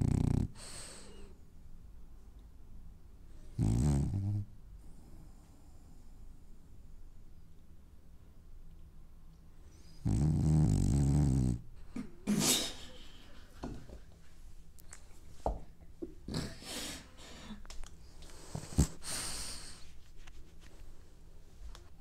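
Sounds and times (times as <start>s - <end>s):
dog snoring: 0.0s - 1.3s, 3.5s - 4.5s, 9.9s - 11.7s.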